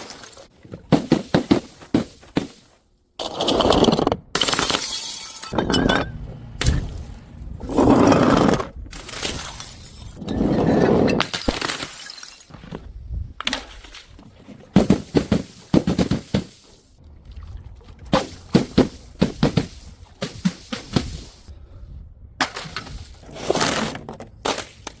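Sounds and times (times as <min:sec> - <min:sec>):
glass breaking and crunching: 0:00.0 - 0:00.5, 0:04.4 - 0:07.2, 0:09.0 - 0:10.2, 0:11.2 - 0:12.5.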